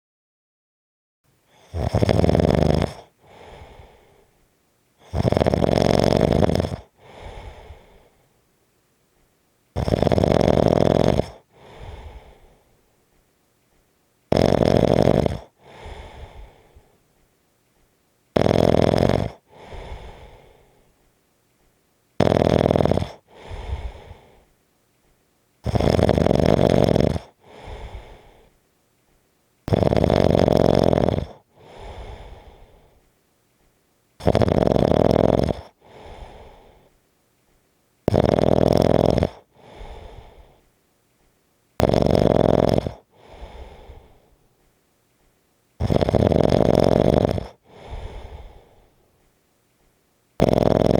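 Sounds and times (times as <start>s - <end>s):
loud harsh snoring: 1.5s - 4.0s, 5.0s - 7.9s, 9.8s - 12.4s, 14.3s - 16.7s, 18.4s - 20.6s, 22.2s - 24.4s, 25.6s - 28.5s, 29.7s - 32.8s, 34.2s - 36.8s, 38.1s - 40.6s, 41.8s - 44.2s, 45.8s - 48.8s, 50.4s - 50.9s
soft breath out: 3.1s - 4.5s, 7.0s - 8.5s, 11.5s - 13.9s, 15.5s - 17.9s, 19.4s - 21.8s, 23.1s - 25.2s, 27.4s - 29.2s, 31.5s - 33.8s, 35.6s - 37.7s, 39.5s - 41.4s, 42.9s - 45.4s, 47.4s - 50.0s.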